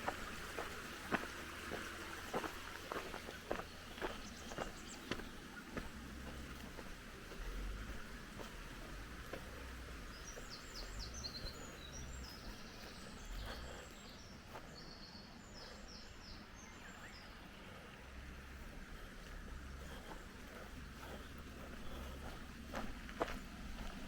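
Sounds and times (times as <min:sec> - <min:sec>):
small bird singing: 0:00.0 - 0:17.9
steady outdoor hiss: 0:00.0 - 0:24.0.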